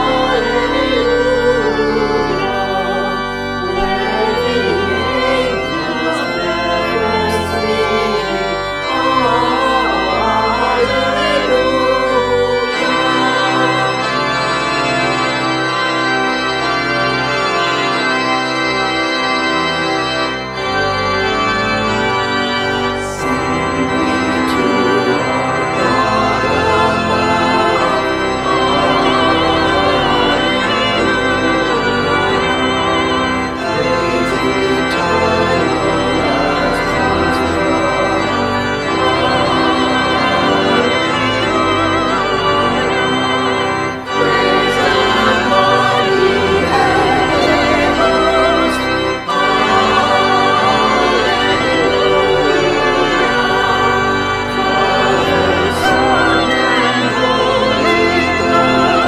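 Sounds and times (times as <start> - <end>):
organ playing hymn chords: 0.0 - 59.0.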